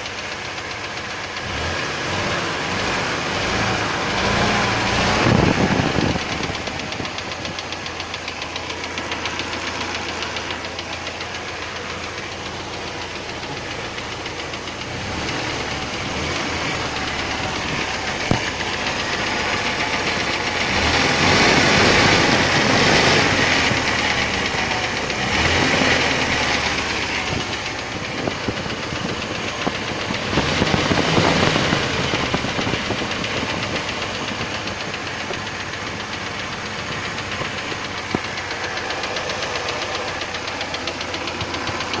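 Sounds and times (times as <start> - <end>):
engine knocking: 0.0 - 42.0
petrol engine running: 0.0 - 42.0.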